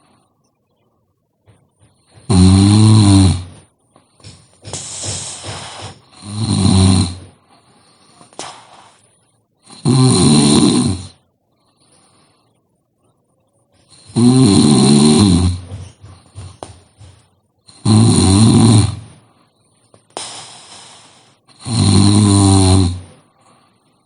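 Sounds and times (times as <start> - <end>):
person snoring: 2.1 - 3.6, 4.2 - 7.4, 9.6 - 11.2, 13.9 - 16.1, 17.7 - 19.2, 20.2 - 23.3
breathy exhale: 4.2 - 6.3, 20.2 - 21.4.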